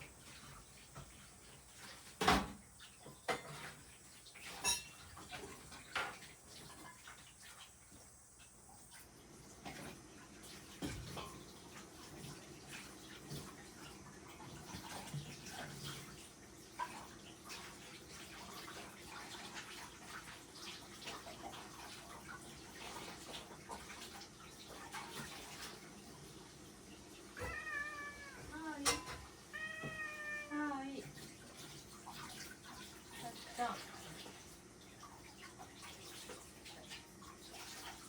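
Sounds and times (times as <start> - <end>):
dishes and cutlery clinking: 4.4 - 6.2, 28.7 - 30.0.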